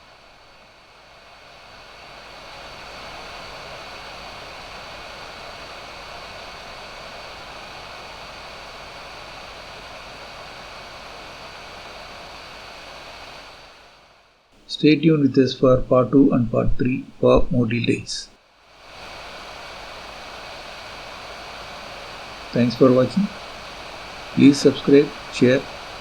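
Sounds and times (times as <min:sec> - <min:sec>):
faint high whine: 0:00.0 - 0:26.0
fan blowing airy hiss: 0:00.0 - 0:26.0.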